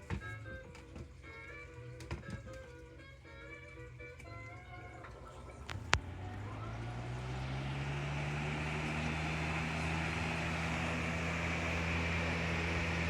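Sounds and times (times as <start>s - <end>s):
fan motor hum and air rush: 5.6s - 13.0s.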